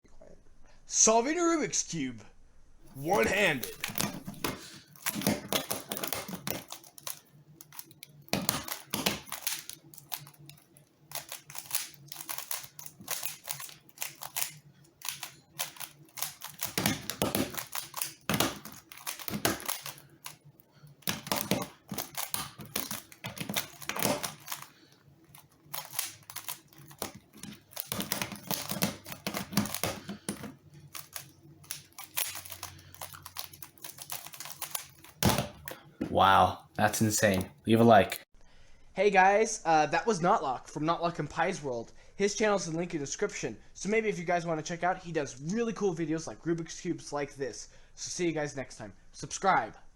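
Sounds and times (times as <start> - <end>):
puzzle cube plastic clicks: 3.0 - 38.0.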